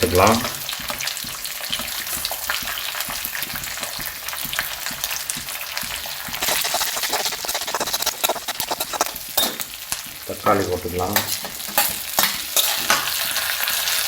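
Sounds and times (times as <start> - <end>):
onions sizzling in hot oil: 0.0 - 7.0, 9.1 - 14.0.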